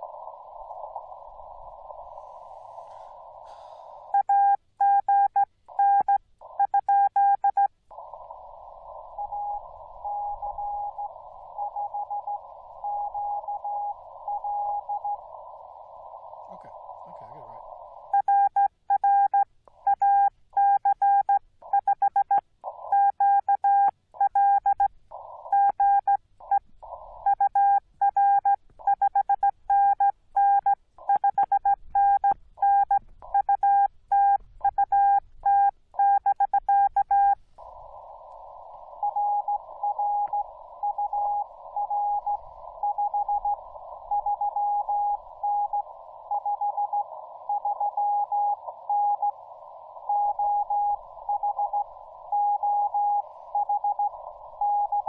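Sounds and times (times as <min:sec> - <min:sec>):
radio receiver hiss: 0:00.0 - 0:04.2, 0:07.8 - 0:18.2, 0:36.6 - 0:55.0
faint incoming morse signal: 0:04.1 - 0:24.8, 0:27.2 - 0:55.0
morse code sidetone: 0:09.1 - 0:15.3, 0:38.9 - 0:49.4, 0:50.0 - 0:55.0.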